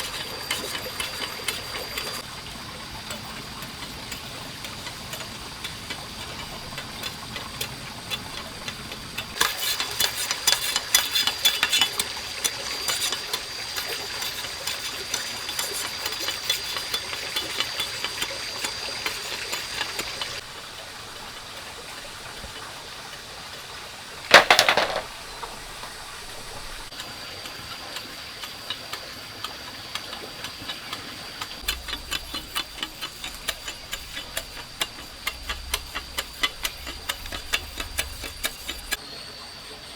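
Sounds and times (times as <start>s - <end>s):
bamboo strips clicking and tapping: 0.0s - 2.3s, 3.0s - 20.5s, 26.9s - 39.0s.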